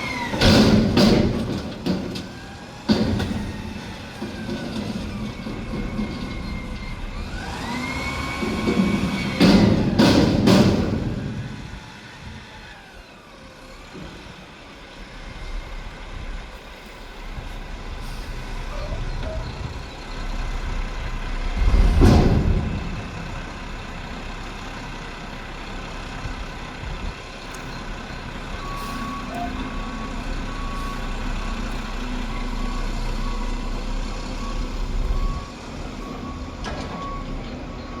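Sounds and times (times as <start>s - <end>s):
garbage truck engine running: 0.0s - 38.0s
loud bursts of noise: 21.1s - 24.3s
reversing alarm beeping: 28.5s - 38.0s.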